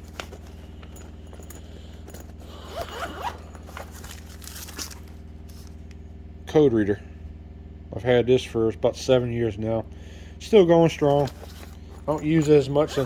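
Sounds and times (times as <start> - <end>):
rustling and scraping of tool: 0.0 - 6.0, 10.8 - 13.0
low steady hum: 0.0 - 13.0.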